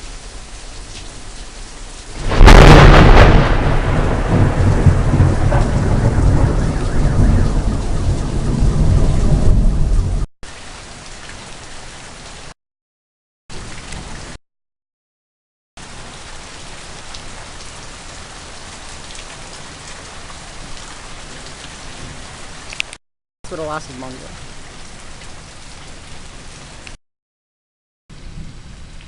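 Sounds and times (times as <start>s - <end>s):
heavy rain: 0.0s - 12.6s, 13.5s - 14.4s, 15.8s - 27.0s, 28.1s - 29.0s
thunderclap with low rumble: 2.2s - 10.3s, 28.1s - 29.0s.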